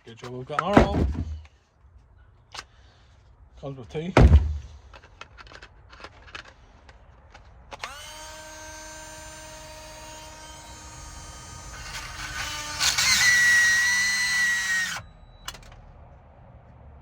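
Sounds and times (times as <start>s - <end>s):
rotary tool whining: 7.4s - 15.7s.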